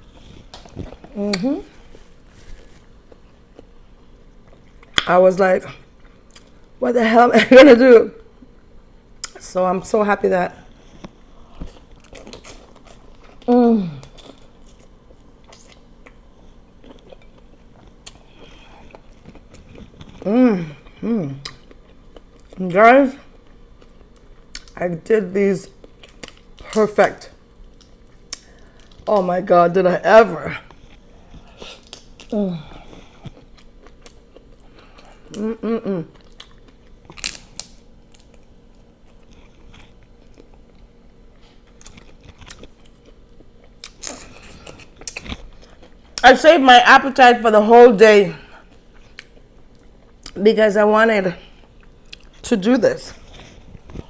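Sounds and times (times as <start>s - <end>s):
person chewing: 0.0s - 5.1s, 10.6s - 22.6s, 23.3s - 24.8s, 25.7s - 29.2s, 30.6s - 46.2s, 48.4s - 50.4s, 51.4s - 52.5s, 53.1s - 54.0s
biting and chewing prawns: 30.6s - 46.2s.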